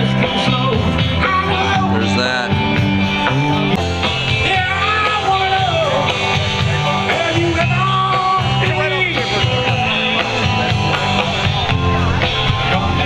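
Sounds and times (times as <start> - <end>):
rock and roll music: 0.0 - 13.0
person singing: 4.4 - 10.8.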